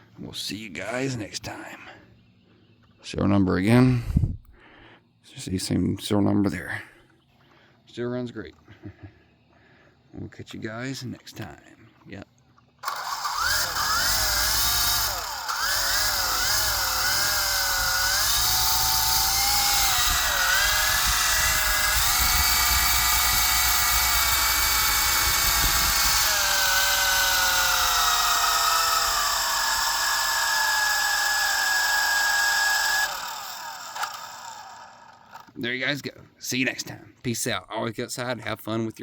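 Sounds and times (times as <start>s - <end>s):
model helicopter rotor whining: 12.8s - 35.5s.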